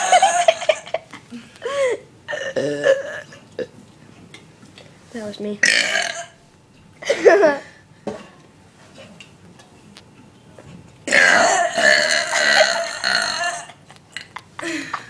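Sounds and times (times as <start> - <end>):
person burping: 2.3 - 3.7, 5.6 - 6.4, 11.1 - 14.4.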